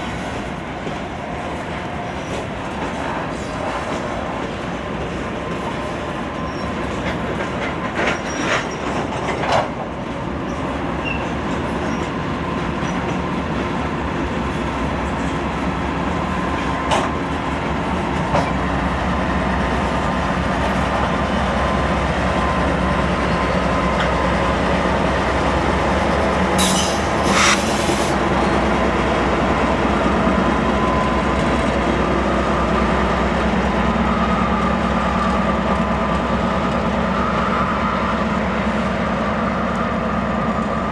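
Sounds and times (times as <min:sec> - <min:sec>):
train wheels rumbling on rail: 0:00.0 - 0:40.9
harsh wheel squeal: 0:26.4 - 0:28.2.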